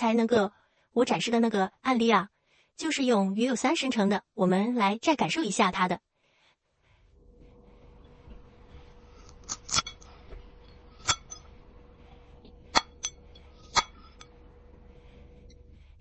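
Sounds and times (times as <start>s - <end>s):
faint steady hum: 6.2s - 16.0s.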